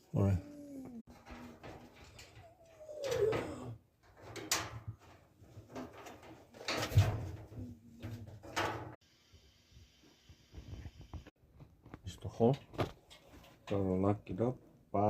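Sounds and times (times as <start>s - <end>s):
parts knocking and rattling: 1.1s - 9.0s.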